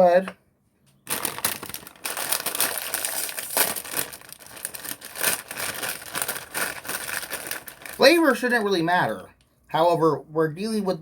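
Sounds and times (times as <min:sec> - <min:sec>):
plastic snack bag rustling: 0:01.0 - 0:08.4.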